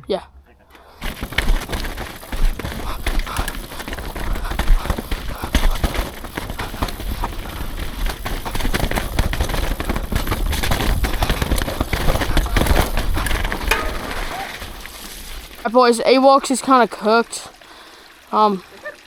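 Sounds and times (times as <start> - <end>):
bike knocks and rattles: 0.7 - 15.6.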